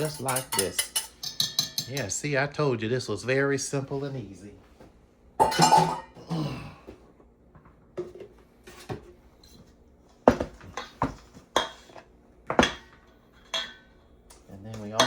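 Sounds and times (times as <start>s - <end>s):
utensil clinking against bowl: 0.0s - 2.2s.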